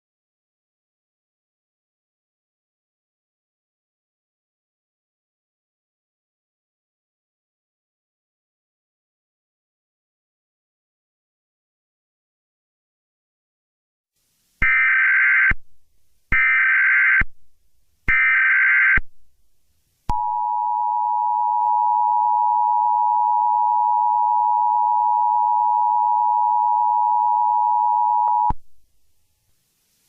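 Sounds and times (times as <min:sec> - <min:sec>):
steady two-tone attention signal: 0:20.1 - 0:28.6.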